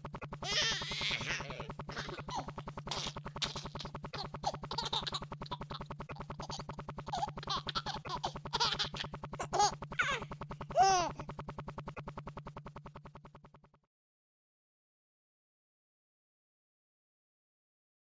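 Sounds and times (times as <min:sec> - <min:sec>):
rapid pulsing hum: 0:00.0 - 0:13.9
baby cooing and gurgling: 0:00.4 - 0:11.3.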